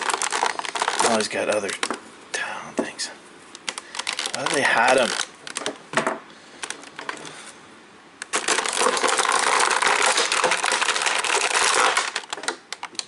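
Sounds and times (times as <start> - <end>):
plastic packaging crinkling: 0.0 - 2.0, 3.6 - 5.8, 8.2 - 13.0.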